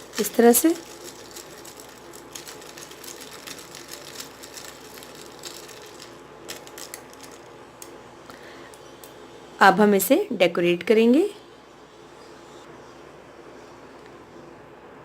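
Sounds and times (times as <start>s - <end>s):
spoon stirring ice in a glass: 0.0s - 6.2s.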